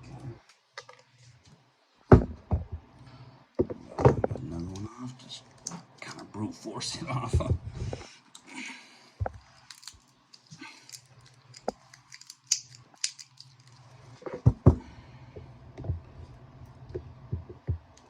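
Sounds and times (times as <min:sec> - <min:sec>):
metal tools prying battery: 0:09.7 - 0:13.8.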